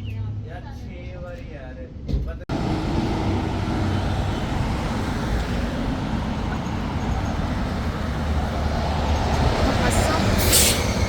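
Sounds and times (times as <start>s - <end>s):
road traffic passing: 2.5s - 11.0s.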